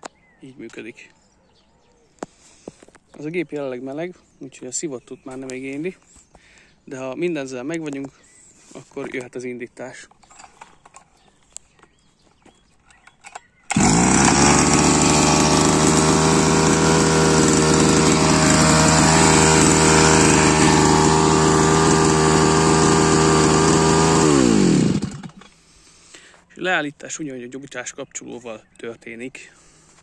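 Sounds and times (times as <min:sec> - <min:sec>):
brush cutter engine running: 0:13.7 - 0:25.7.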